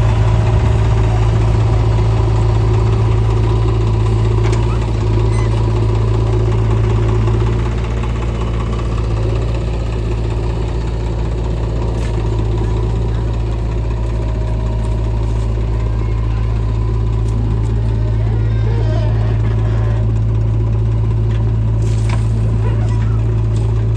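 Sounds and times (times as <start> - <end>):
diesel engine humming: 0.0 - 23.9.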